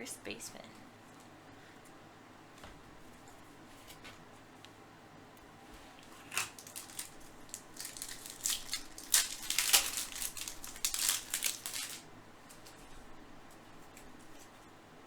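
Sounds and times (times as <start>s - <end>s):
foil wrapper tearing and crinkling: 6.1s - 12.1s.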